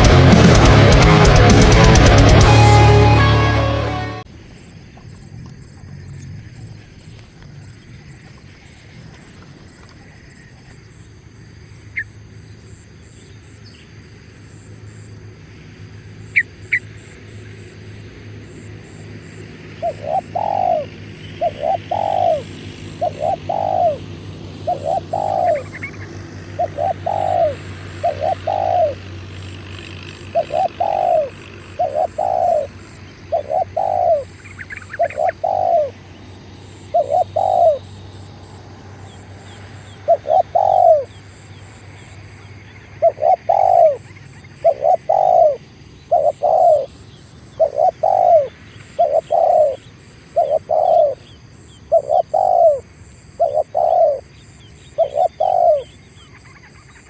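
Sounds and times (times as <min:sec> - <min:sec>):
small birds twittering: 0:04.4 - 0:57.0
dove cooing: 0:16.0 - 0:57.0.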